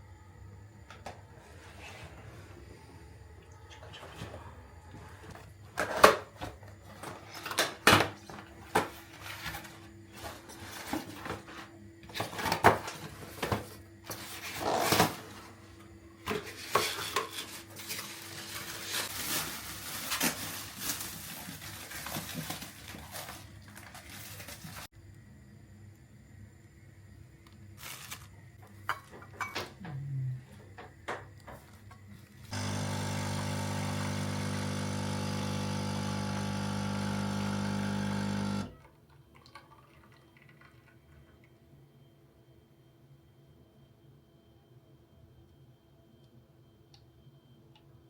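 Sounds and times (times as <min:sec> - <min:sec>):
packaging rustling: 0:17.6 - 0:24.9, 0:27.8 - 0:28.3
knocks and clatter of handling parts: 0:28.7 - 0:30.0.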